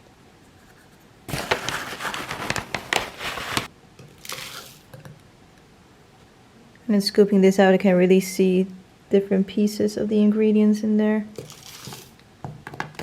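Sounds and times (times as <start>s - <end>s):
plastic pouch crinkling: 1.3s - 4.9s.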